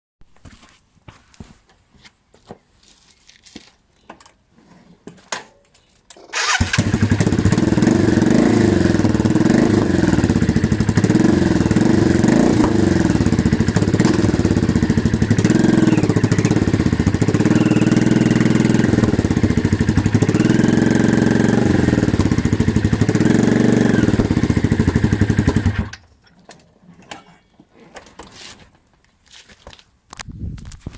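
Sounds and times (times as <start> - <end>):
motorcycle engine revving: 6.3 - 26.0.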